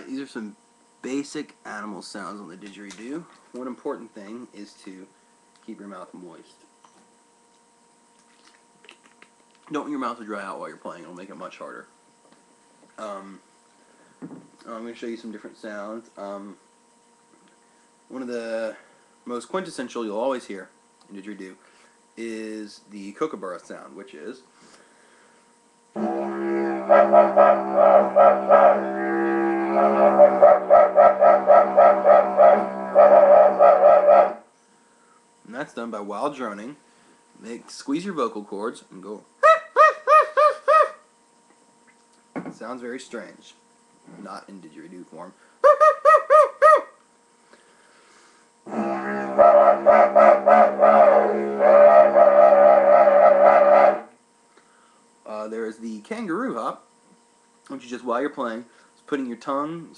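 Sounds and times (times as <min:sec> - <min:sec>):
didgeridoo drone: 0:26.0 - 0:34.5, 0:48.6 - 0:54.2
rapid rhythmic voiced yelps: 0:26.6 - 0:29.1, 0:29.7 - 0:34.4, 0:39.4 - 0:41.0, 0:45.6 - 0:46.9, 0:48.7 - 0:54.1
voiced bird call whoops: 0:45.6 - 0:46.9.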